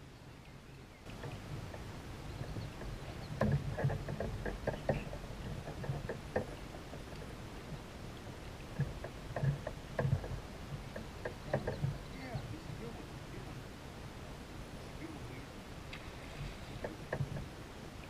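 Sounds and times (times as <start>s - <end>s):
steady low water wash: 0.0s - 18.0s
knocks against kayak hull: 2.8s - 7.1s, 8.8s - 12.0s
small water splashes: 15.8s - 17.5s.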